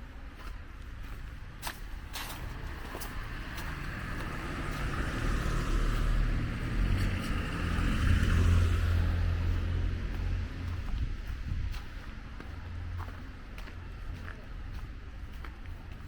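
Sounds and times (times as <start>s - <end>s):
car driving past: 2.2s - 10.8s.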